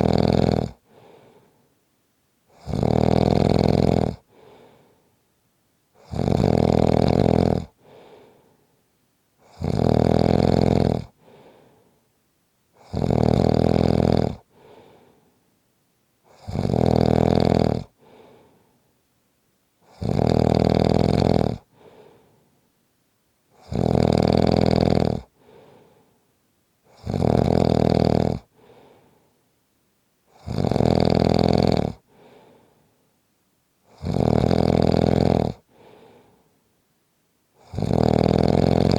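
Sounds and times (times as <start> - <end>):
person snoring loudly: 0.0 - 0.8, 2.5 - 4.2, 6.0 - 8.0, 9.4 - 11.2, 12.8 - 14.5, 16.3 - 17.9, 19.8 - 21.7, 23.6 - 25.3, 26.9 - 28.5, 30.3 - 32.0, 33.9 - 35.7, 37.6 - 38.9
faint breath out: 0.8 - 1.8, 4.2 - 5.2, 7.8 - 8.9, 11.2 - 12.1, 14.5 - 15.5, 18.0 - 18.9, 21.7 - 22.7, 25.4 - 26.3, 28.5 - 29.5, 32.1 - 33.1, 35.7 - 36.7.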